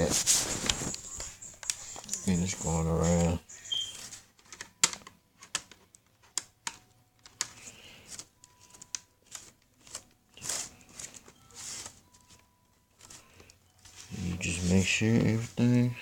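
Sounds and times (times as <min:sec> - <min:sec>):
plastic clips clicking into place: 0:04.4 - 0:07.6.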